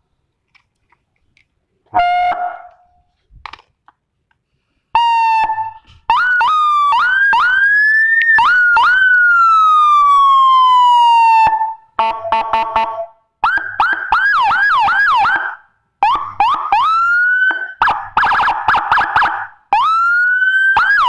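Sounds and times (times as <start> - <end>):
electronic vehicle siren: 2.0 - 2.8, 5.0 - 21.0.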